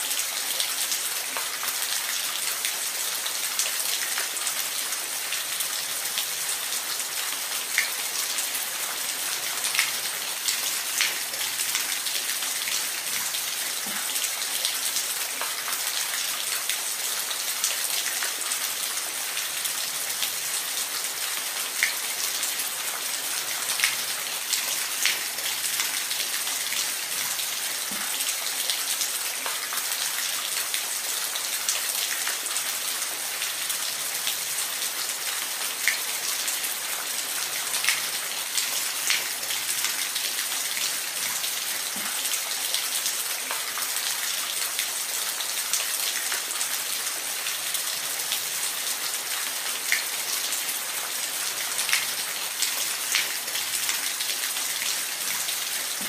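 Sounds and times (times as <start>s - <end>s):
water splashes and drips: 0.0s - 56.0s.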